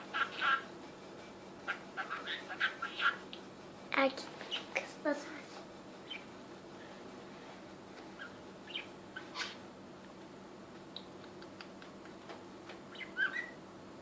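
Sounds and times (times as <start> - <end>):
budgerigar chirping: 0.1 - 0.7, 1.7 - 3.3, 6.0 - 6.3, 8.2 - 9.6, 12.9 - 13.6.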